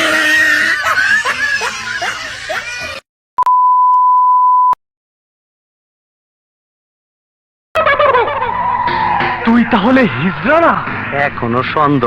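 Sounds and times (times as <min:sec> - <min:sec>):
high censor beep: 0:03.4 - 0:04.8
voices and music: 0:08.3 - 0:12.0.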